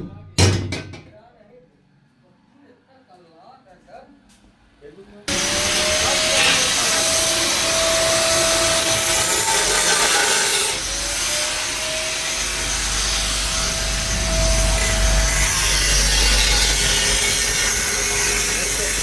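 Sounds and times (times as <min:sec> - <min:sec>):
power tool grinding metal: 0:05.3 - 0:19.0.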